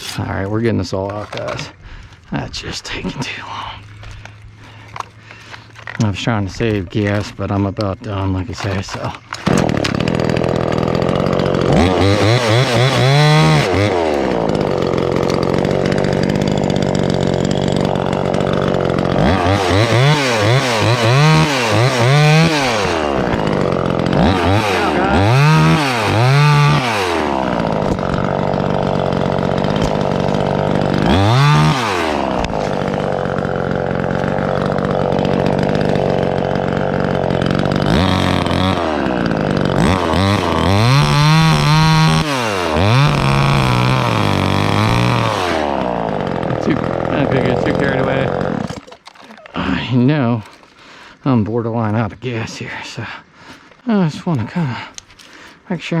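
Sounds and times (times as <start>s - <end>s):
chainsaw idling and revving: 0.0s - 56.0s.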